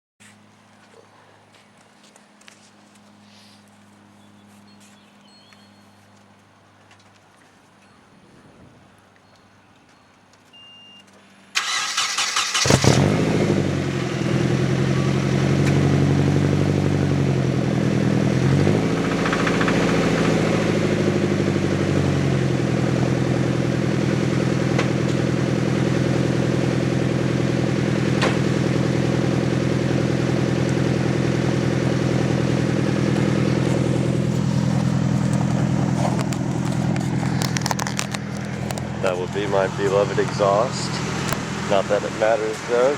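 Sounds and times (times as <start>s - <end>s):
engine idling: 11.4s - 42.9s
engine cranking and starting: 11.5s - 16.6s, 18.0s - 42.9s
engine rod knock: 19.0s - 21.1s.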